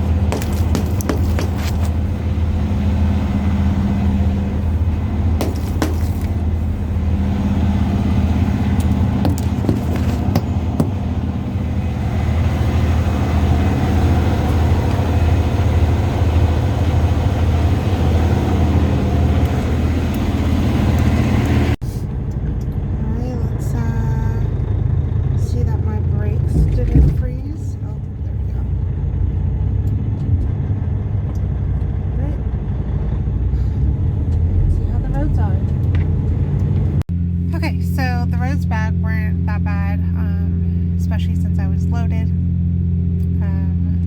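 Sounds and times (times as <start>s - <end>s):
diesel truck engine running: 0.0s - 44.0s.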